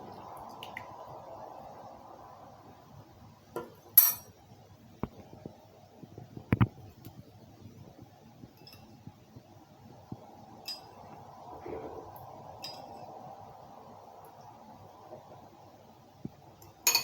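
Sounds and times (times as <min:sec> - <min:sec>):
spoon clinking on glass dish: 0:04.0 - 0:04.3.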